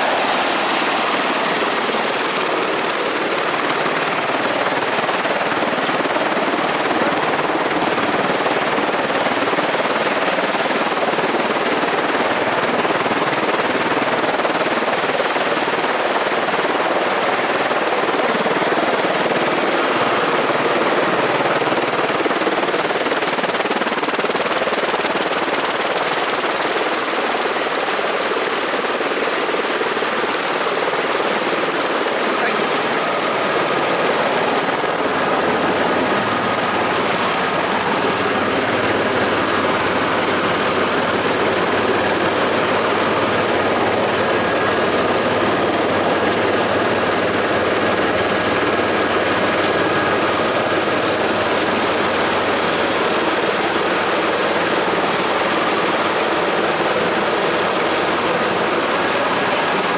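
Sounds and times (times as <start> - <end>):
helicopter turbine and rotor: 0.0 - 59.9.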